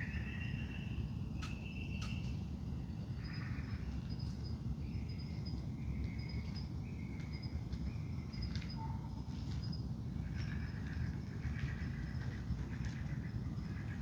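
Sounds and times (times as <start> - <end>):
low background rumble: 10.0 - 14.0.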